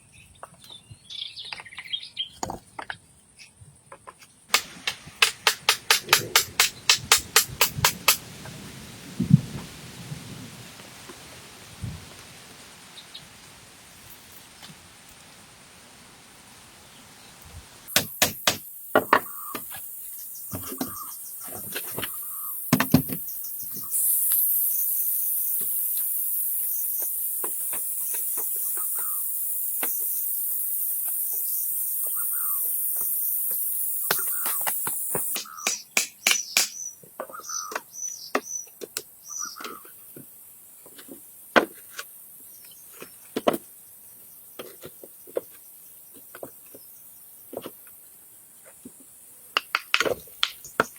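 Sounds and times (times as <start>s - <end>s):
insect drone: 18.0s - 38.1s
bird chirps: 28.5s - 29.3s, 32.0s - 32.8s, 33.7s - 34.6s, 35.3s - 39.8s.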